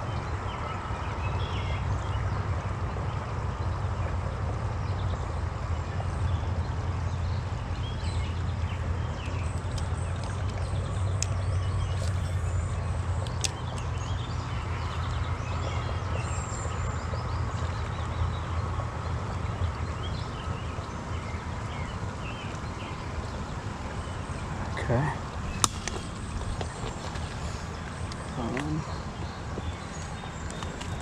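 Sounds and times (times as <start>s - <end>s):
flowing water rumble: 0.0s - 31.0s.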